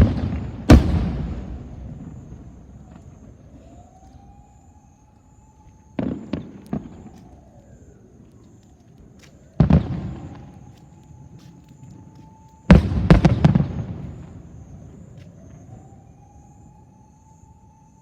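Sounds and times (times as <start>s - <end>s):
firework bangs echoing: 0.0s - 3.2s, 6.0s - 7.2s, 12.7s - 14.6s.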